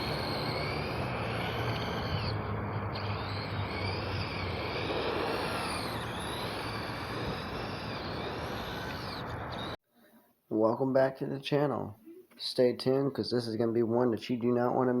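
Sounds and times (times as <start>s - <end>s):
electric rc car motor whine: 0.0s - 9.8s.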